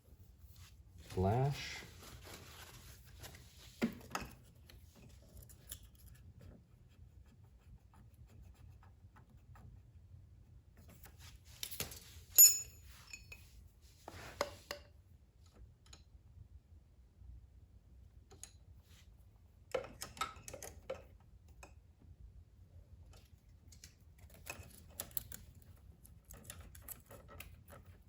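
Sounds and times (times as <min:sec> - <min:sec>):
sharp metallic clink: 0:12.4 - 0:13.4.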